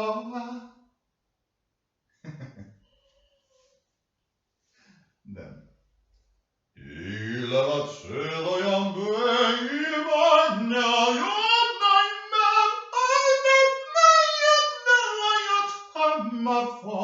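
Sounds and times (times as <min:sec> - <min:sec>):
person singing wordless notes: 0:00.0 - 0:00.6, 0:06.8 - 0:17.0.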